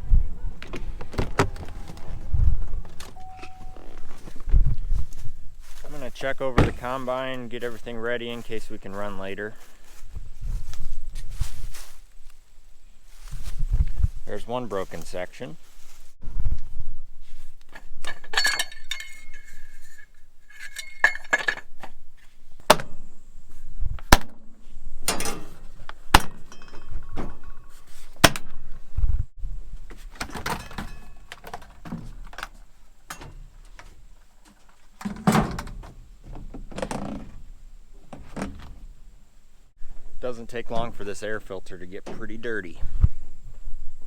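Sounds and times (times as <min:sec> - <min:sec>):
metal tools clinking and knocking: 0:17.7 - 0:22.0, 0:25.0 - 0:28.1, 0:30.2 - 0:34.1.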